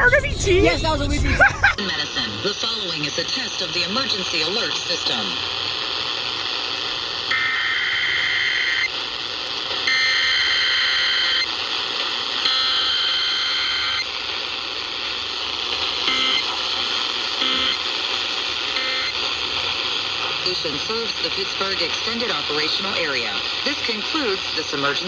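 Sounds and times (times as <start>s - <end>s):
harsh data bursts: 0.0s - 5.6s
radio hiss: 0.0s - 25.0s.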